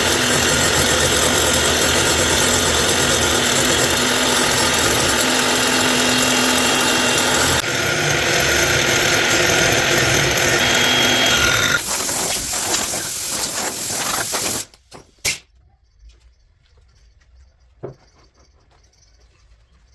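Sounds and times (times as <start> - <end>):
power tool running: 0.0 - 14.8.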